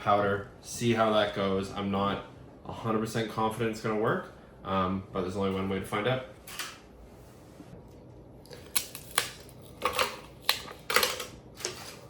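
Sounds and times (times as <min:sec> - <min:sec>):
kitchen things clicking and clattering: 0:08.5 - 0:12.0.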